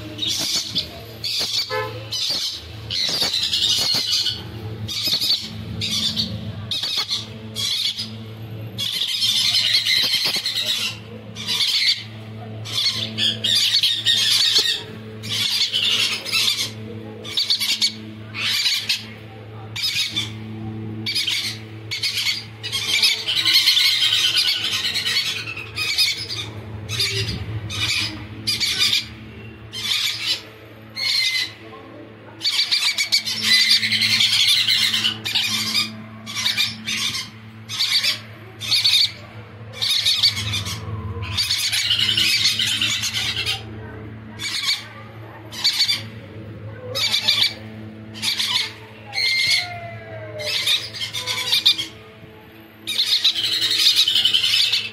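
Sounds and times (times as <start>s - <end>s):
parrots squawking: 0.0s - 54.9s
steady low hum: 0.0s - 54.9s.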